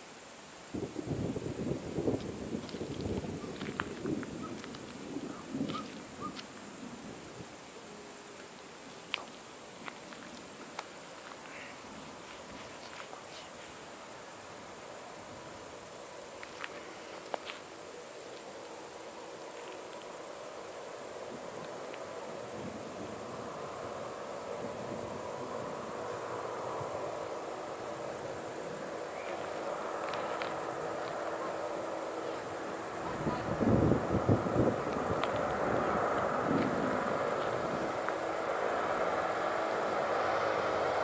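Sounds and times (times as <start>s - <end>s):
crickets chirring: 0.0s - 41.0s
faint clicks: 8.9s - 11.5s.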